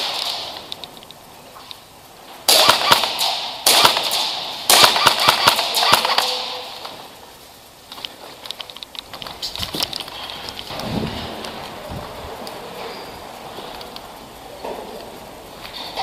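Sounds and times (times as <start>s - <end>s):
airsoft rifle rapid shots: 0.0s - 0.6s, 2.4s - 7.0s.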